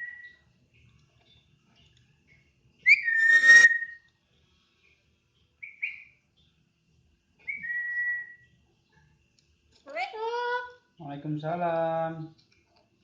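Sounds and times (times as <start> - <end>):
parrot chirps: 2.8 - 4.0, 9.8 - 10.7
parrot whistling and squawking: 2.8 - 4.0, 7.5 - 8.4.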